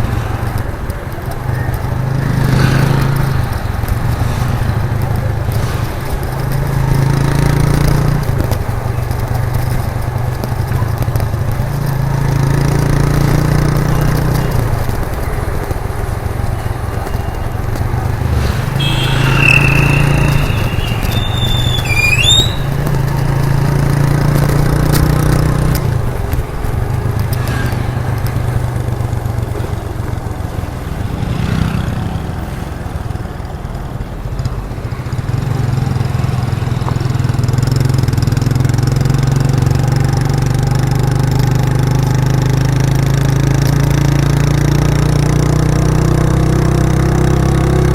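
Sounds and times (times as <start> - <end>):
motorcycle engine running: 0.0 - 47.9
high-pitched tone: 18.7 - 22.8.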